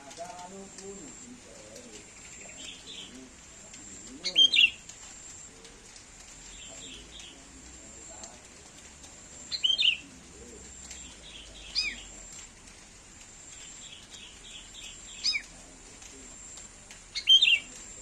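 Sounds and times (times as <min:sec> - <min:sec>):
soft bird chirps: 0:00.8 - 0:08.5, 0:09.1 - 0:12.5, 0:13.4 - 0:18.0
bird calling loudly: 0:04.2 - 0:04.9, 0:13.6 - 0:15.5, 0:17.2 - 0:17.7.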